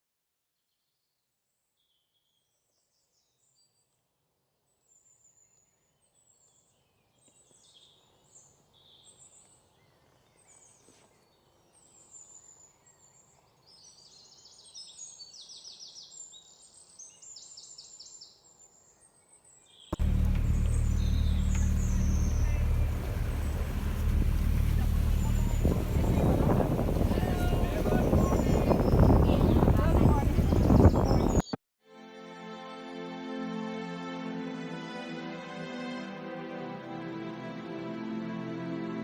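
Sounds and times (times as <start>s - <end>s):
birds chirping and trilling: 20.0s - 31.6s.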